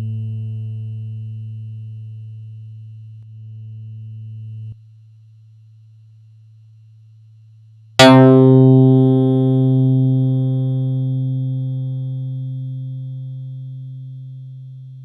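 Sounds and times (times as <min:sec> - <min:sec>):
faint low hum: 0:00.0 - 0:15.0
bright synthesizer bass note: 0:08.0 - 0:14.4
synthesizer bass note: 0:08.0 - 0:14.4.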